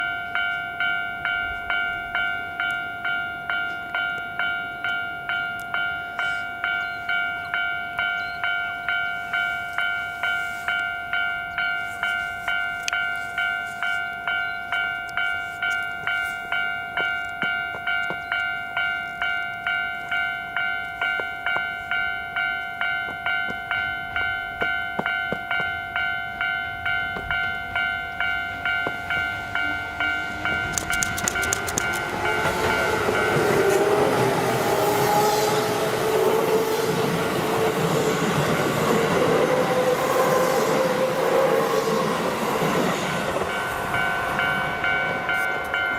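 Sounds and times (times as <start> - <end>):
level crossing alarm clanging: 0.0 - 45.9
train rumble: 14.6 - 45.9.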